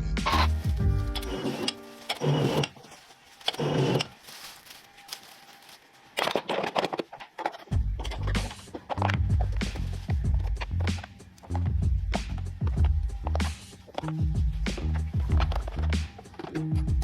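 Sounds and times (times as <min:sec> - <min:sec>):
machine hissing: 0:00.3 - 0:06.1.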